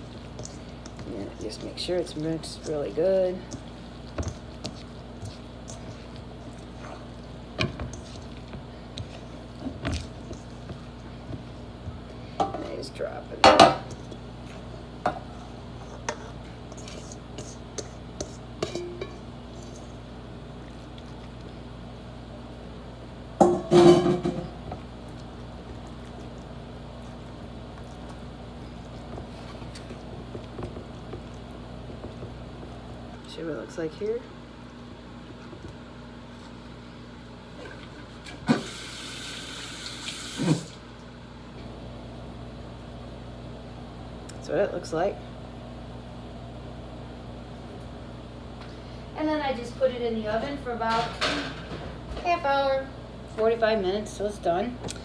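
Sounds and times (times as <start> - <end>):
low electrical hum: 0.0 - 55.0
dishes and pan knocking: 13.4 - 13.9, 23.4 - 24.5
tap water hissing: 38.5 - 40.8.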